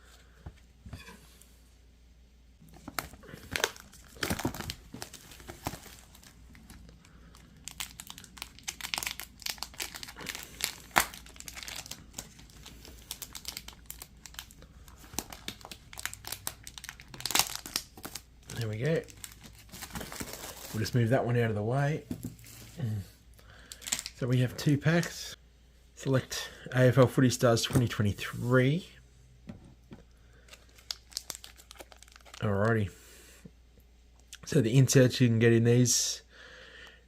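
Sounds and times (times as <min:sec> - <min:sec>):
packaging being torn and crinkled: 0:02.7 - 0:20.9, 0:23.7 - 0:24.2, 0:30.5 - 0:32.7.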